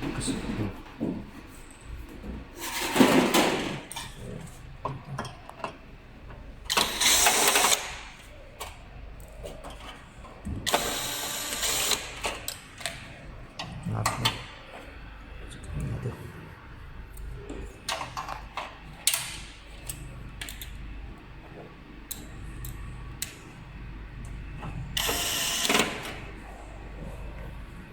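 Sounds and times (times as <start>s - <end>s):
electric fireplace mechanical rattle: 2.4s - 15.9s, 16.9s - 27.9s.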